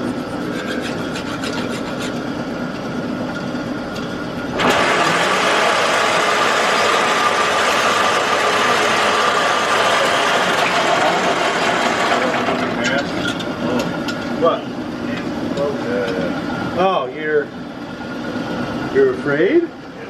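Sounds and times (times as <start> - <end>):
machinery running: 0.0 - 20.0
machine hissing and whining: 2.1 - 20.0.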